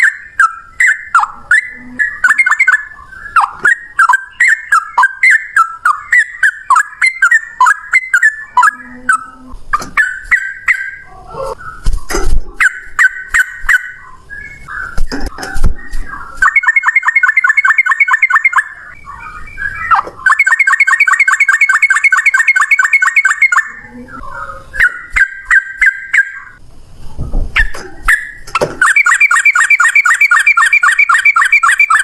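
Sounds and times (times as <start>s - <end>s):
bird rapid repeated notes: 0.0s - 8.8s, 9.7s - 23.9s, 24.7s - 26.6s, 27.6s - 32.0s
bulbul chirps: 16.4s - 24.0s, 27.6s - 32.0s.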